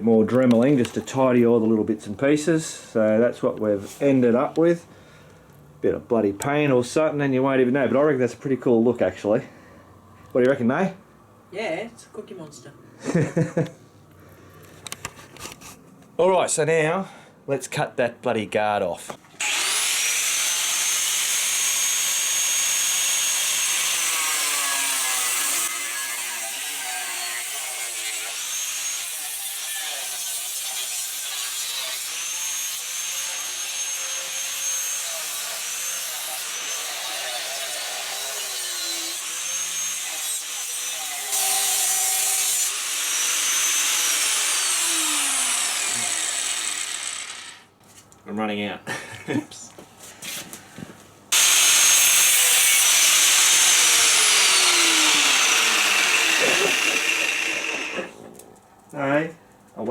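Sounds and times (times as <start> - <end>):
angle grinder cutting metal: 19.4 - 47.7, 51.3 - 58.2.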